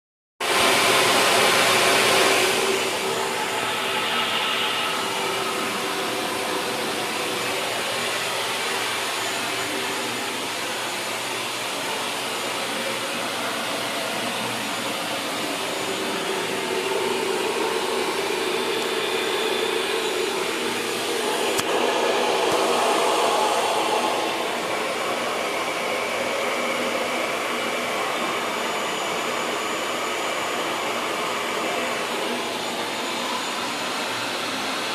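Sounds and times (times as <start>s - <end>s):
shop vac motor running: 0.4s - 34.9s.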